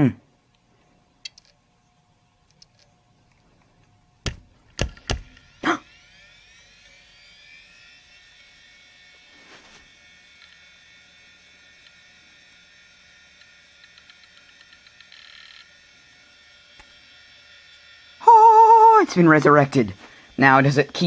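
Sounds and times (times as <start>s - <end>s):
hard drive being smacked: 4.2s - 5.4s
hard drive spinning up whine: 4.8s - 21.0s.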